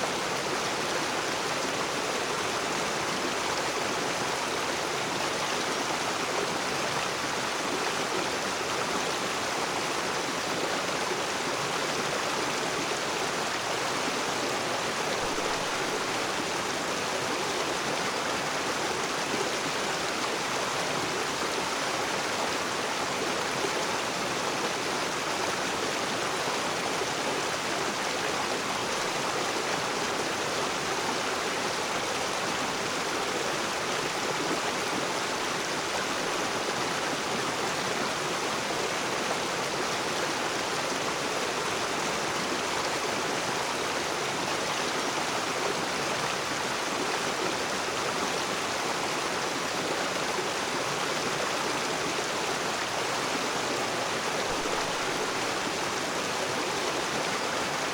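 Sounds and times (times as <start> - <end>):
river water rushing over rocks: 0.0 - 57.9.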